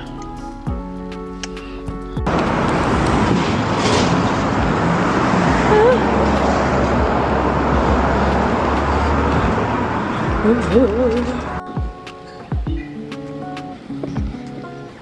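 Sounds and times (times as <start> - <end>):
street traffic: 0.0 - 15.0
deep rumble: 2.2 - 11.6.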